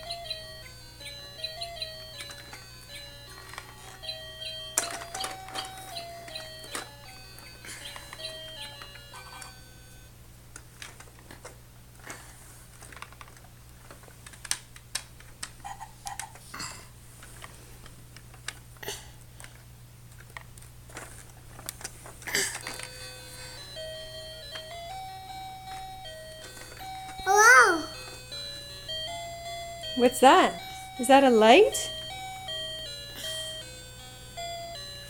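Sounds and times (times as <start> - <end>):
plastic toy train pieces clacking: 4.8 - 6.9.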